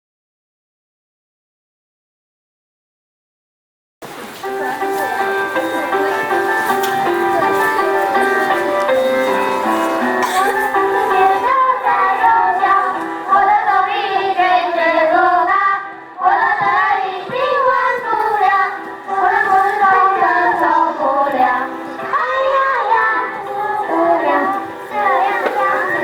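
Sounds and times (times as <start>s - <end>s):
musical accompaniment: 4.0s - 26.0s
child singing: 10.2s - 26.0s.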